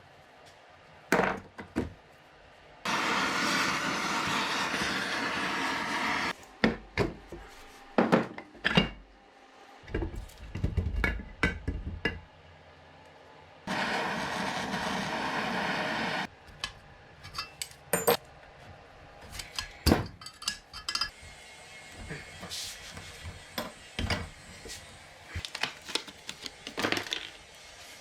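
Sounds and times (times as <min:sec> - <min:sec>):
metal tools clinking and knocking: 0:17.2 - 0:18.2, 0:19.5 - 0:21.1.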